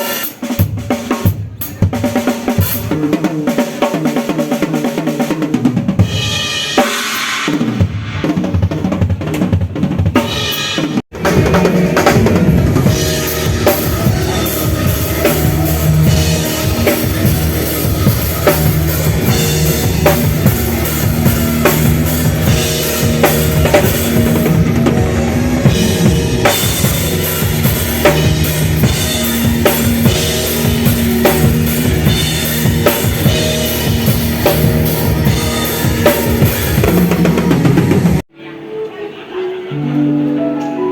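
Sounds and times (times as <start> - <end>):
drum kit playing: 0.0 - 38.3
low bass notes: 11.2 - 38.2.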